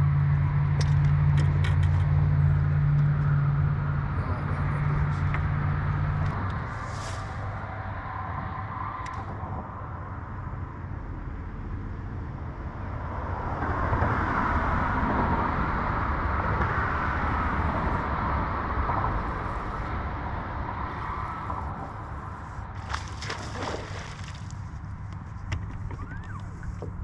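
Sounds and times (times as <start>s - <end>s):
outboard motor running: 22.1s - 27.0s.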